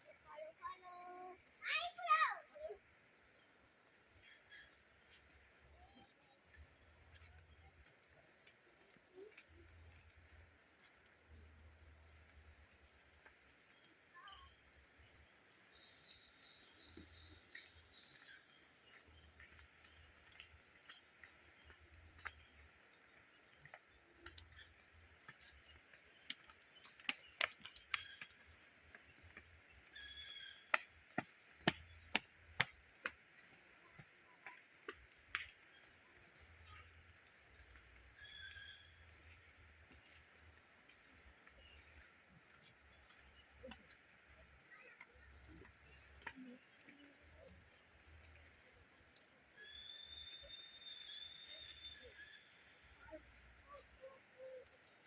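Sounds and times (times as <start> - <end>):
faint clicks and ticks: 0.0 - 49.5
bird call: 29.9 - 31.0, 38.2 - 39.4.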